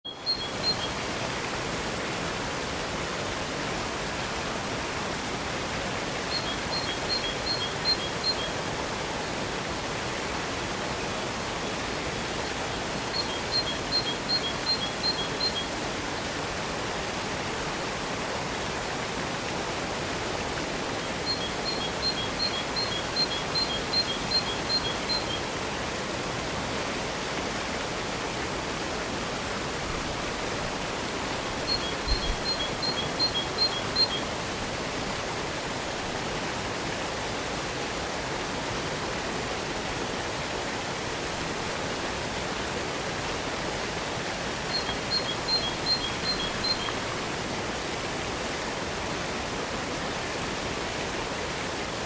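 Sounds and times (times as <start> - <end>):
waterfall rushing water: 0.1 - 52.0
short high bird chirps: 44.7 - 47.0.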